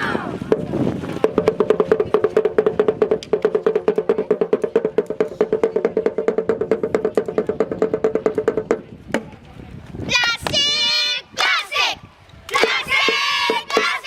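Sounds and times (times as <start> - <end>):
music with fast percussion beat: 0.5 - 9.3, 12.6 - 14.0.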